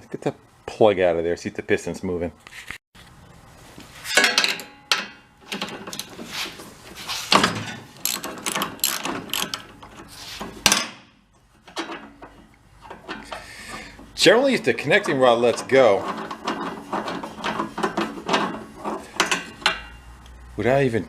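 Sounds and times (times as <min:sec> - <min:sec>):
socket ratchet clicking: 0:08.0 - 0:09.7.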